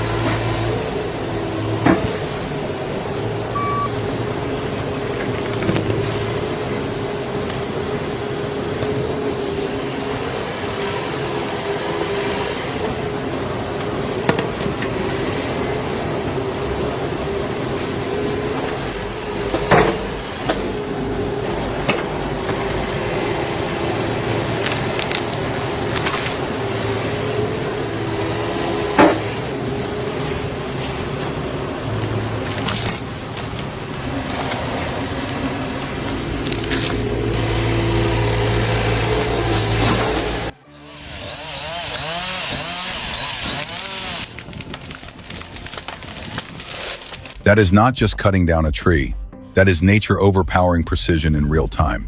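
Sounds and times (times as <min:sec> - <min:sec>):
diesel engine running: 0:00.0 - 0:49.6
constant whine: 0:00.0 - 0:52.0
metal clanks: 0:19.5 - 0:20.8.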